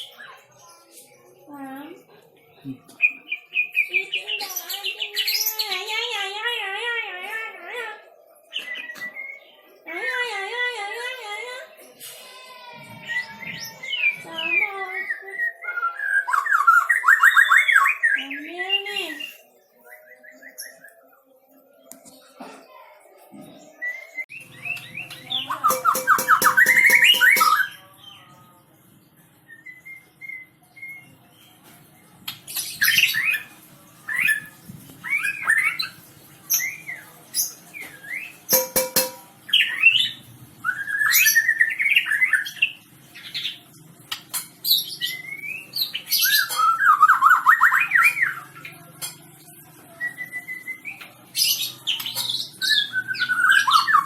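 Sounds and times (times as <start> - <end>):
bird singing whistles and trills: 8.4 - 9.7, 29.4 - 31.2, 34.1 - 43.5, 44.7 - 48.7, 49.8 - 54.0.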